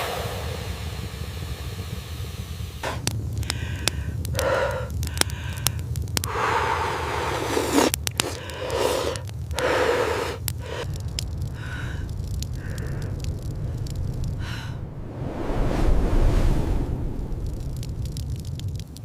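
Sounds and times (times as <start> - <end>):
low rumble: 0.0 - 6.3, 10.5 - 19.0
soft breathy swells: 0.0 - 18.4
wood fire crackling and popping: 0.1 - 19.0.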